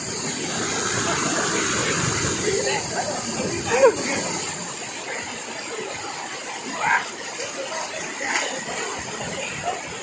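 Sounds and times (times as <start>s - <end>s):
waterfall rushing: 0.0s - 10.0s
faint voices: 0.4s - 10.0s.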